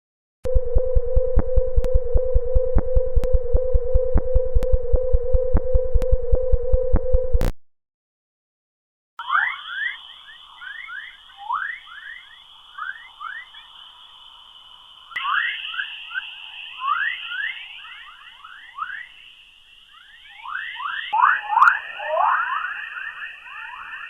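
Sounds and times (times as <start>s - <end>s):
rising whistling chirps: 9.2s - 24.0s
steady high hiss: 9.2s - 24.0s.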